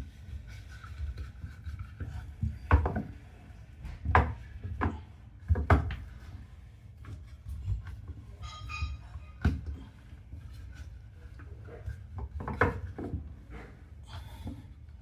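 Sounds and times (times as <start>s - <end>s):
tool knocks and scrapes: 7.0s - 13.9s.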